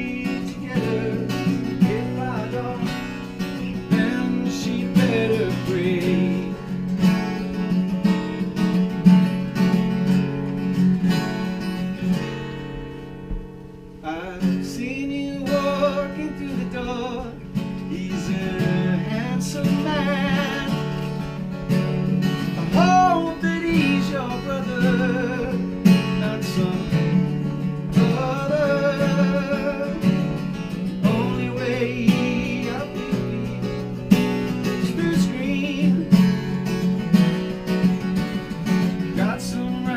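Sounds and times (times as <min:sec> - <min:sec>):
person singing: 0:00.0 - 0:06.7, 0:14.0 - 0:21.2, 0:22.7 - 0:34.0, 0:34.6 - 0:36.6
strummed acoustic guitar: 0:00.0 - 0:39.9.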